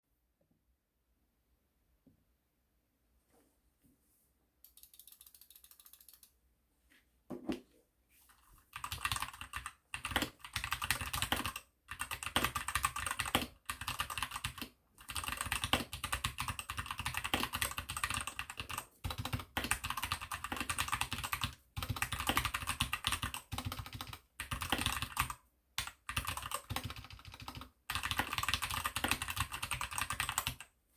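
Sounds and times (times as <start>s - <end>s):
mechanical keyboard typing: 4.7s - 6.3s, 8.7s - 30.7s.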